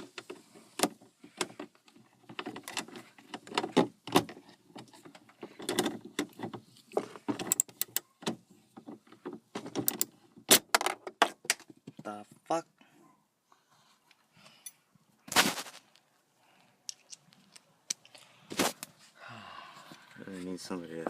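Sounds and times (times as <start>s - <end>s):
plastic and metal parts clicking: 0.0s - 12.0s.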